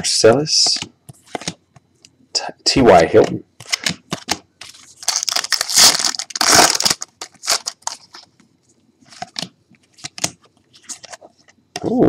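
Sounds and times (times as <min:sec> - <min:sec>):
cards clicking and rustling: 0:03.2 - 0:08.3, 0:09.1 - 0:11.3
foil wrapper tearing and crinkling: 0:05.0 - 0:08.2.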